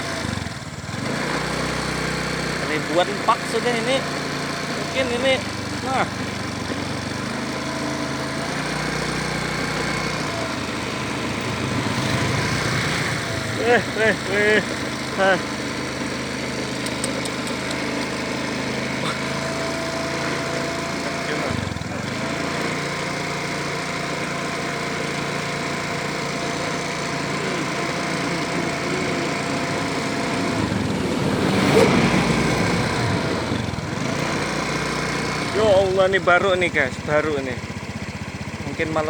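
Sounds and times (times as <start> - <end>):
small engine running: 0.0 - 39.0.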